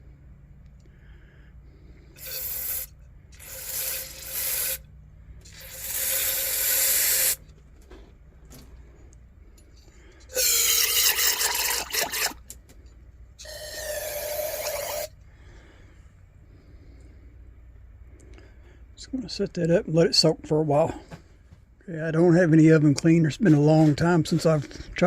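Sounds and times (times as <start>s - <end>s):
aerosol spray hissing: 2.2s - 4.8s, 5.5s - 7.4s, 13.5s - 15.1s.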